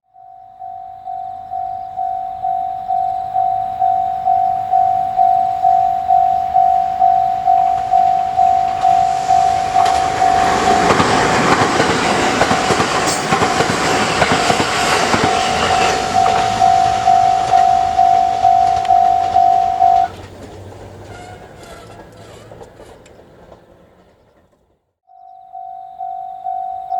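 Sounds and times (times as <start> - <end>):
level crossing bell dinging: 0.1 - 11.6, 15.1 - 20.1, 25.1 - 26.9
train wheels rumbling and clacking: 3.6 - 24.8.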